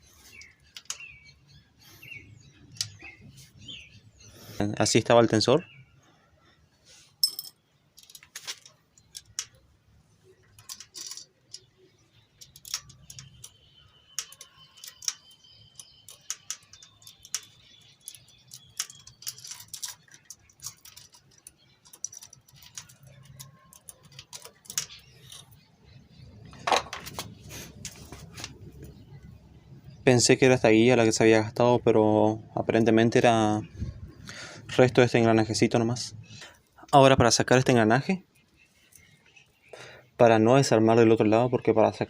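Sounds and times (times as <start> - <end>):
small metal parts clinking: 7.2 - 9.7, 10.4 - 25.7.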